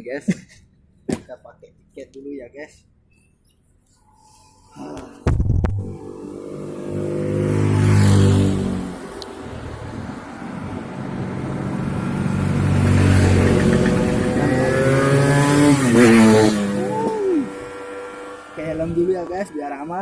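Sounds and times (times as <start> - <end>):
vehicle engines running: 5.4 - 19.7.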